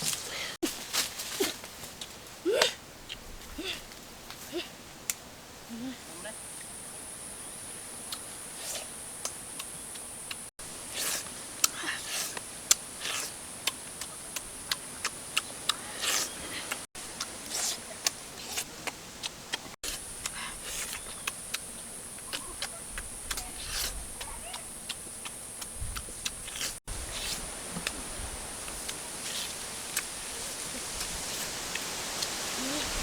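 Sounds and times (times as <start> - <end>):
lip smacks: 8.1 - 28.0, 28.7 - 30.1
chewing with mouth clicks: 9.6 - 28.0, 28.6 - 32.4.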